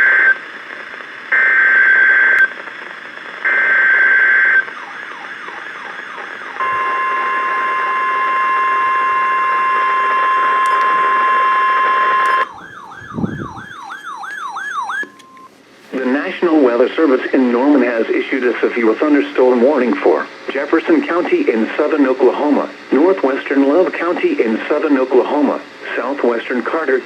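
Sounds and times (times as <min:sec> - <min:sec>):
steady warning alarm tone: 0:03.5 - 0:15.5.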